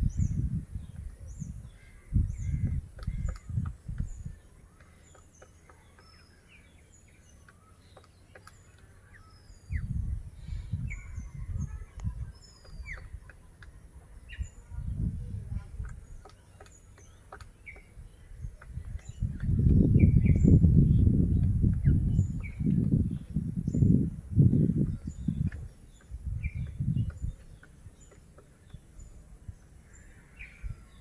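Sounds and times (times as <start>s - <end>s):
small birds chirping: 0.0s - 31.0s
woodpecker hammering on wood: 2.7s - 6.2s, 15.8s - 19.8s, 25.4s - 28.9s.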